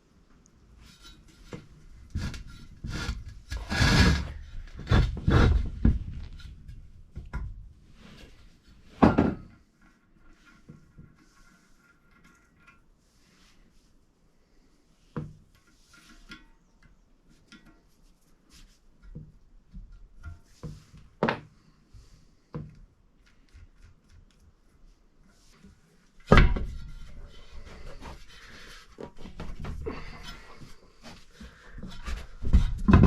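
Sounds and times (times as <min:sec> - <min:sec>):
knocks and clunks of objects: 0:00.9 - 0:09.7, 0:15.2 - 0:16.5, 0:19.0 - 0:21.6, 0:22.4 - 0:24.4, 0:25.6 - 0:33.0.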